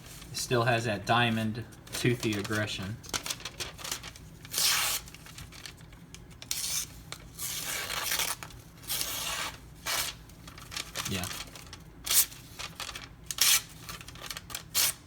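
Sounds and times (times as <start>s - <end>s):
knife slicing paper: 2.3s - 5.7s, 6.4s - 15.0s.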